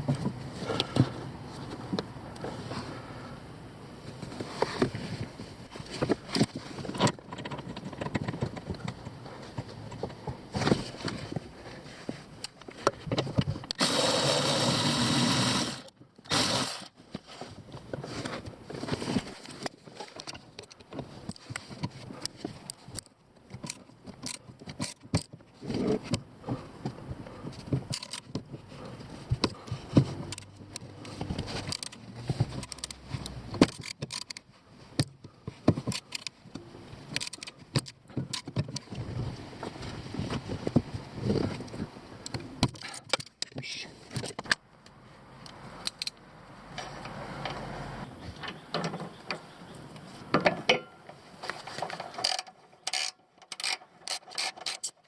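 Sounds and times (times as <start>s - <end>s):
power tool running: 13.8s - 16.9s
tools clicking on metal: 52.2s - 55.0s.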